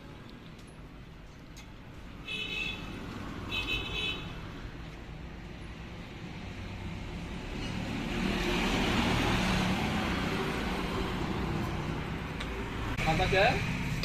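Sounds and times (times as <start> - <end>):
vehicle passing: 5.7 - 14.0.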